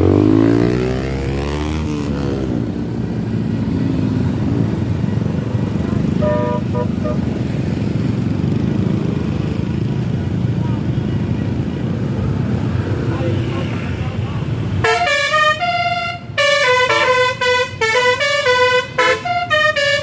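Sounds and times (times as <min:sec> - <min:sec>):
vehicle passing by: 0:00.0 - 0:14.8
road traffic rumble: 0:00.0 - 0:20.0
vehicle horn toots: 0:06.2 - 0:07.3, 0:14.8 - 0:20.0.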